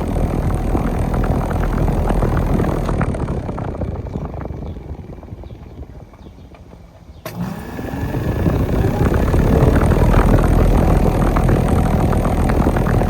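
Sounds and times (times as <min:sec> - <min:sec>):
air conditioner fan and compressor: 0:00.0 - 0:13.0.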